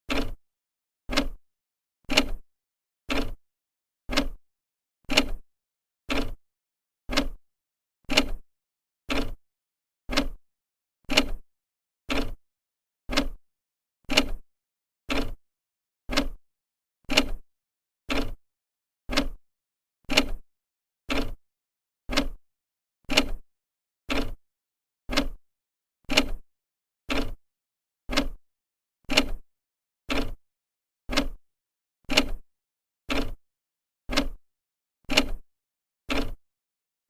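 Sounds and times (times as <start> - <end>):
clock ticking: 1.1 - 1.4, 4.1 - 4.4, 7.1 - 7.4, 10.1 - 10.4, 13.1 - 13.4, 16.1 - 16.4, 19.1 - 19.4, 22.1 - 22.4, 24.1 - 24.4, 25.1 - 25.4, 28.1 - 28.4, 30.1 - 30.4, 31.1 - 31.4, 32.1 - 32.4, 33.1 - 33.4, 34.1 - 34.4, 35.1 - 35.4, 36.1 - 36.4.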